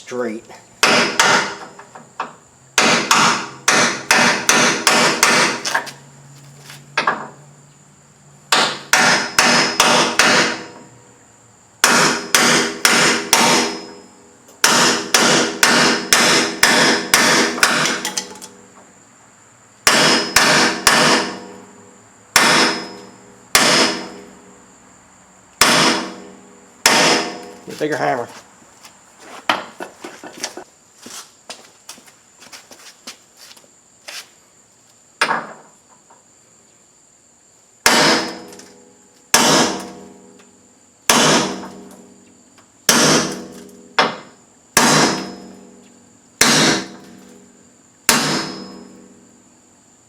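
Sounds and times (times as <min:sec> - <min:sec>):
hammer striking metal: 0:00.8 - 0:01.7, 0:02.8 - 0:05.6, 0:08.5 - 0:10.8, 0:11.8 - 0:14.0, 0:14.6 - 0:18.6, 0:19.8 - 0:21.5, 0:22.4 - 0:24.3, 0:25.6 - 0:27.6, 0:37.9 - 0:38.5, 0:41.1 - 0:41.7, 0:42.9 - 0:44.2, 0:44.8 - 0:45.5, 0:46.4 - 0:47.0, 0:48.1 - 0:49.0.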